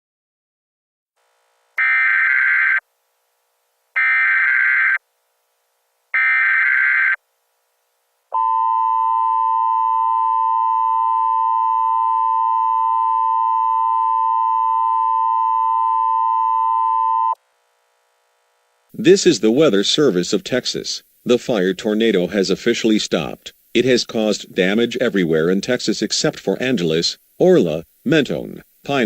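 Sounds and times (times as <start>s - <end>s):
data tone bursts: 8.4s - 17.4s
two-tone attention signal: 8.4s - 17.4s.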